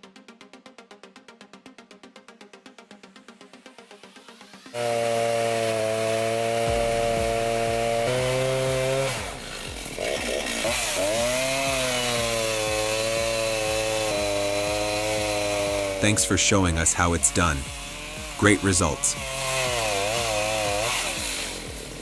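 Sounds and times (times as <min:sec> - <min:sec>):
chainsaw cutting wood: 0:04.8 - 0:22.0.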